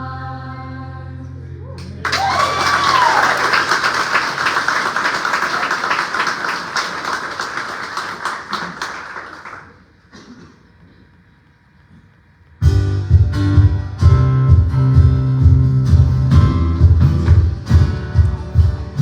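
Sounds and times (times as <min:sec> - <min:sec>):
person whooping: 0:01.6 - 0:03.8
congregation applauding and cheering: 0:01.8 - 0:10.0.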